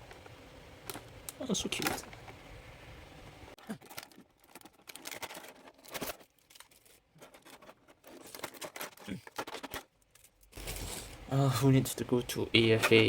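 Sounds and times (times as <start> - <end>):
plastic packaging clicks and crinkles: 3.6 - 11.3.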